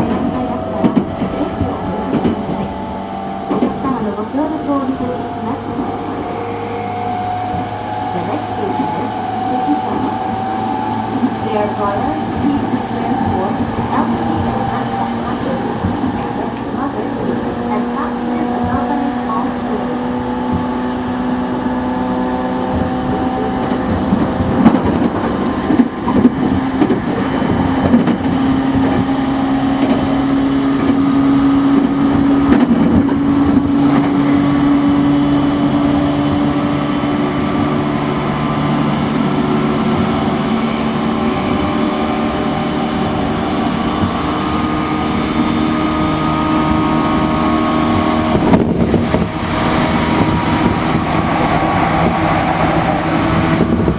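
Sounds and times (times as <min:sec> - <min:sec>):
train motor whine: 0:00.0 - 0:27.1
rail noise: 0:00.0 - 0:53.9.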